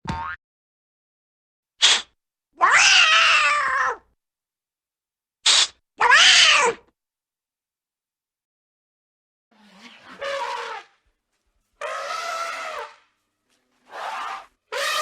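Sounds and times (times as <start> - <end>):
cartoon cat yowling meow: 2.6 - 4.1, 6.0 - 6.8.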